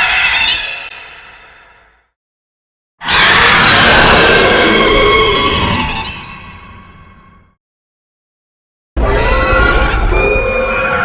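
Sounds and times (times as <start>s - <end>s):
monster screech: 3.0s - 6.6s, 9.0s - 11.0s.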